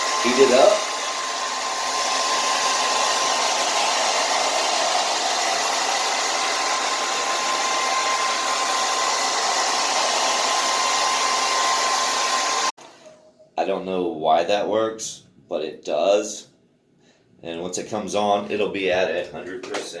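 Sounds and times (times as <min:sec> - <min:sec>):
hair dryer running: 0:00.0 - 0:12.8.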